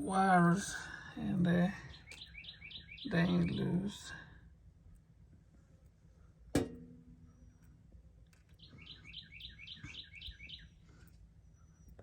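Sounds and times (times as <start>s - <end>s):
bird chirping rapidly: 2.0s - 3.8s, 8.6s - 10.8s.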